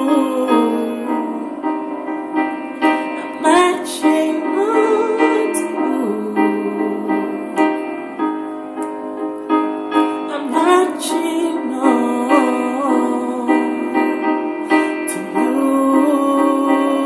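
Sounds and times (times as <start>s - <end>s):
person singing long notes: 0.0s - 2.0s, 3.2s - 7.8s, 10.3s - 17.0s
piano chords: 0.0s - 17.0s.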